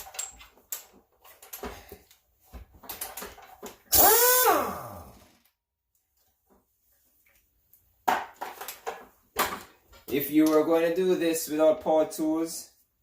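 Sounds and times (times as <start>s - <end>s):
impact wrench burst: 3.9s - 5.4s.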